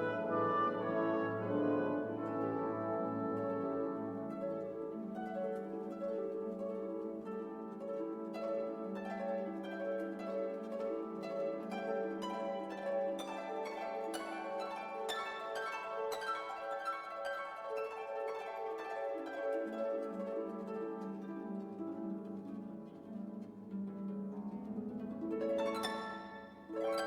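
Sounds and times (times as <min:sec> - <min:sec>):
sustained string chords: 0:00.0 - 0:04.8.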